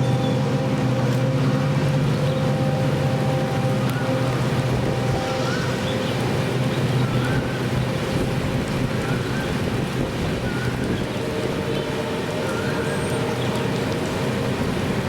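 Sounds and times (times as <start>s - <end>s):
train rumbling past: 0.0s - 15.0s
wind on microphone: 4.0s - 15.0s.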